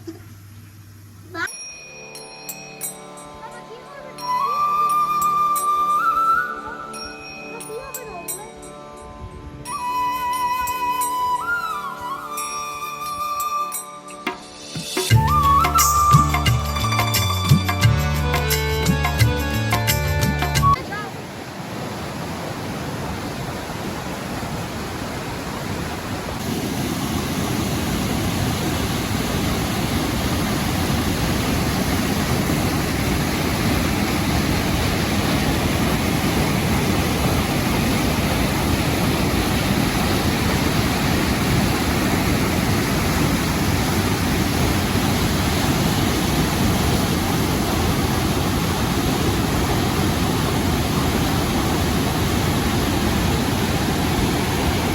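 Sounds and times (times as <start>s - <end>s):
waterfall rushing water: 20.7s - 54.9s.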